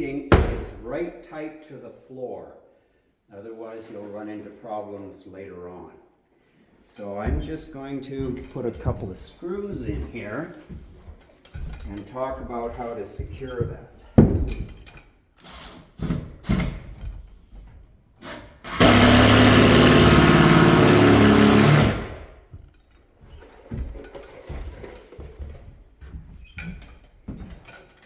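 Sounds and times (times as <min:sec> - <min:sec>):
handling clicks and knocks: 0:07.2 - 0:15.2, 0:22.5 - 0:28.0
power drill driving a screw: 0:18.2 - 0:22.3.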